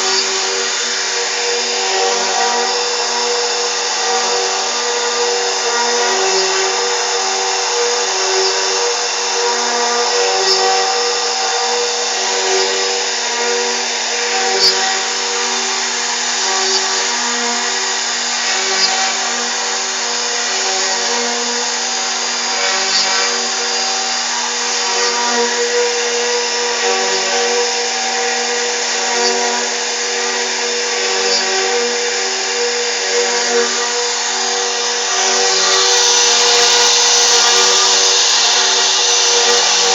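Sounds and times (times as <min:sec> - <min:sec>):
router spindle whine: 0:00.0 - 0:39.9
cutting ticks: 0:34.8 - 0:39.9.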